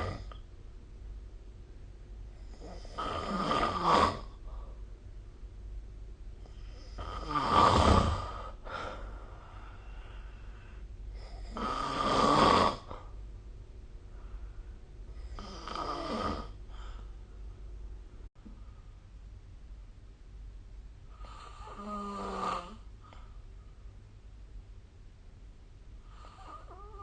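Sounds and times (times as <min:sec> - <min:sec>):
person snoring: 0:02.4 - 0:04.4, 0:06.6 - 0:09.0, 0:11.2 - 0:13.1, 0:15.2 - 0:17.0, 0:21.2 - 0:22.8, 0:26.1 - 0:27.0.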